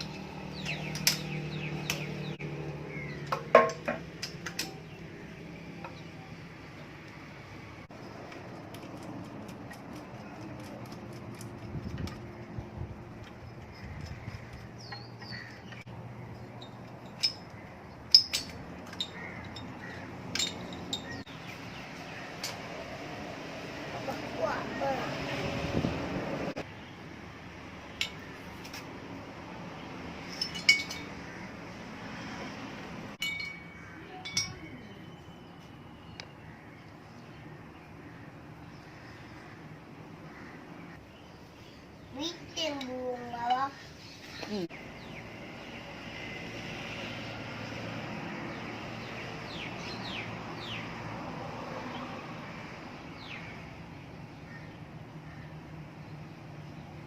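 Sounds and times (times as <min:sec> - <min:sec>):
bird chirping: 0:00.0 - 0:03.4, 0:13.2 - 0:22.6
low hum of distant traffic: 0:00.0 - 0:57.0
metal tools clinking: 0:16.4 - 0:21.2, 0:30.3 - 0:31.2, 0:33.2 - 0:34.8.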